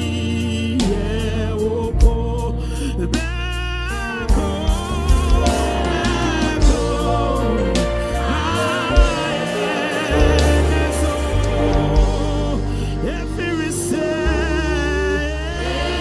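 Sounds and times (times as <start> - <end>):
heavy bass: 0.0 - 16.0
person singing with vibrato: 0.0 - 16.0
drum hits: 4.3 - 12.5.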